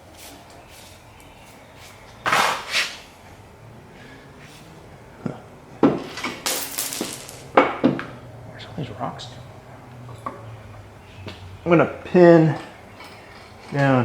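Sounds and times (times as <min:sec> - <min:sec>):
scrapes: 0:00.2 - 0:03.2
hard parts knocking and clattering: 0:05.2 - 0:08.4, 0:09.1 - 0:14.0.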